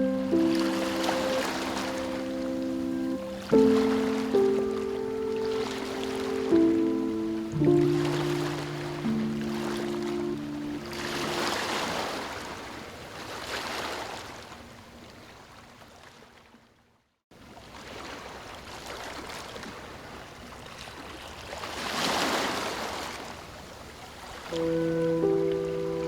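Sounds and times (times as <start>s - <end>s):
ocean waves washing in: 0.0s - 14.4s, 24.5s - 26.0s.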